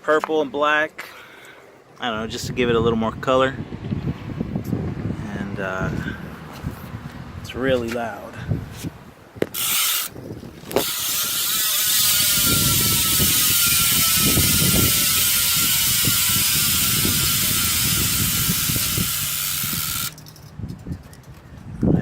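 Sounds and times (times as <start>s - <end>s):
bicycle freehub ratcheting: 9.5s - 20.5s.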